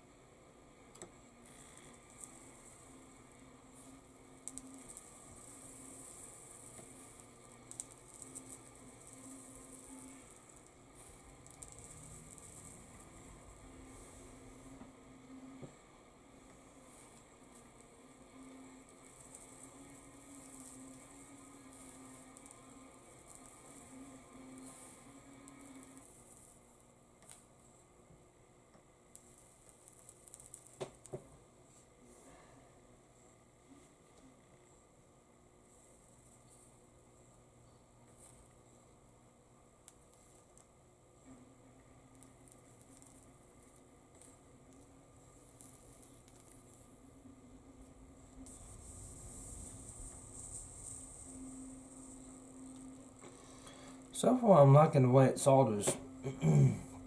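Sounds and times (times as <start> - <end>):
solder sizzling and crackling: 0.0 - 57.0.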